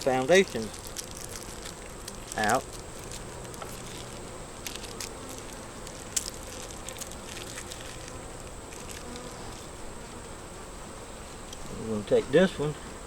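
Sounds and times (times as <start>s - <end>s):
hive parts clicking and knocking: 0.0s - 9.7s
honey bees buzzing: 0.0s - 13.0s.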